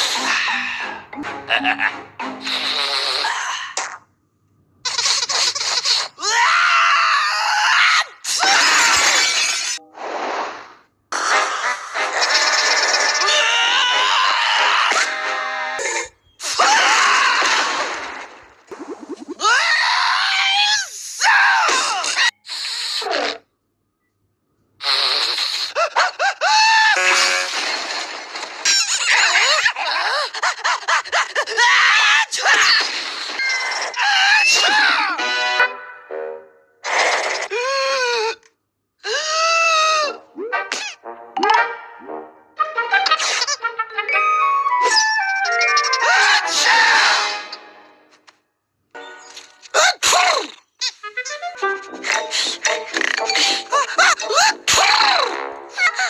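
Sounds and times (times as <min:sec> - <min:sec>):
cartoon sneezes: 0:40.5 - 0:41.0.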